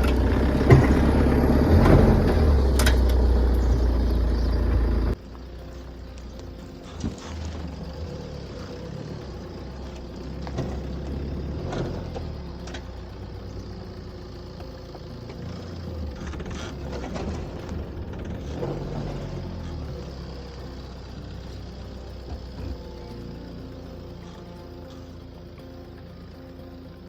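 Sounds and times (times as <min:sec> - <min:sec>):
diesel engine running under load: 0:00.0 - 0:27.0
tyres crunching on loose ground: 0:00.0 - 0:27.0.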